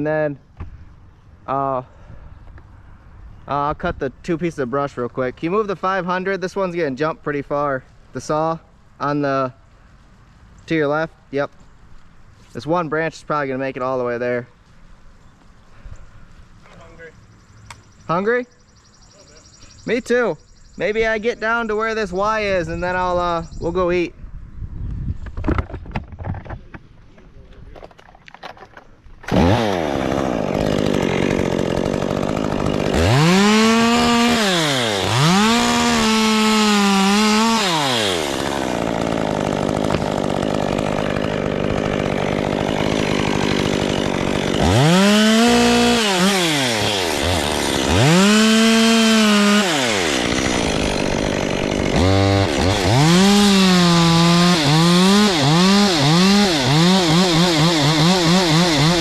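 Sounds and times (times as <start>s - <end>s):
chainsaw revving and idling: 29.2s - 59.0s.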